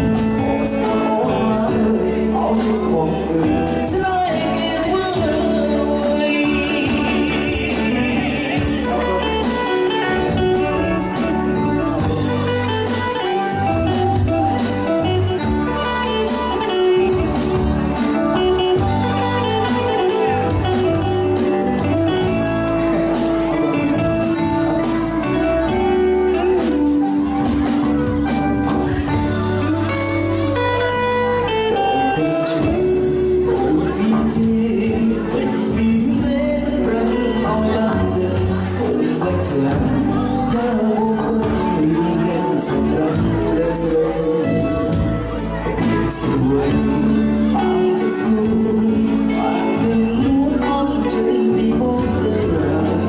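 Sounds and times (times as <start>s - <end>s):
live band playing: 0.0s - 53.0s
electric guitar lines: 6.6s - 34.1s.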